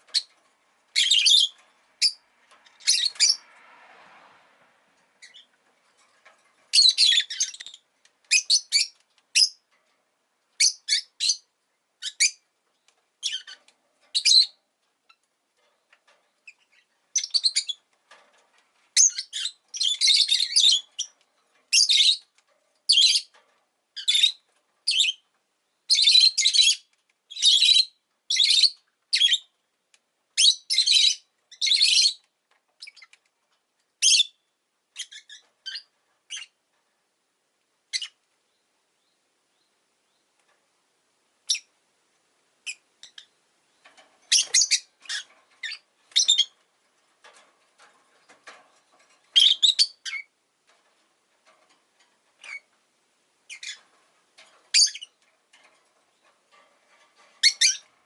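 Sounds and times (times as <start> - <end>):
bird chirping: 0.0 - 3.5, 5.1 - 5.6, 6.7 - 9.6, 10.6 - 15.3, 15.9 - 17.9, 19.0 - 23.4, 24.0 - 29.5, 30.4 - 33.2, 34.0 - 36.6, 37.9 - 40.4, 41.4 - 41.7, 42.6 - 46.6, 49.2 - 50.3, 52.3 - 52.8, 53.4 - 56.6, 57.2 - 58.0.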